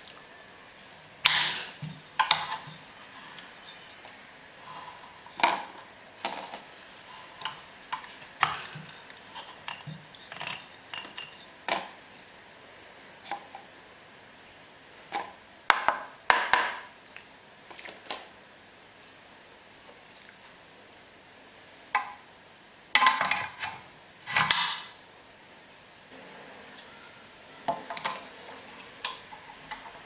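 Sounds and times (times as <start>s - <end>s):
hard objects clicking and knocking: 7.4s - 12.0s.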